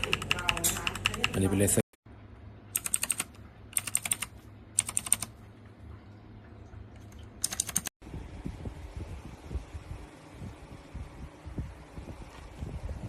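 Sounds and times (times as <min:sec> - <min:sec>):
mechanical keyboard typing: 0:00.0 - 0:01.6, 0:02.7 - 0:05.3, 0:07.1 - 0:07.9.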